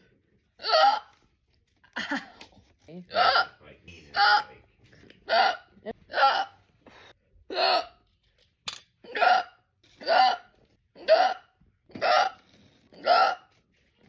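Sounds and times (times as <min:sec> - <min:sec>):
person hiccuping: 0:07.5 - 0:08.0, 0:09.0 - 0:12.4.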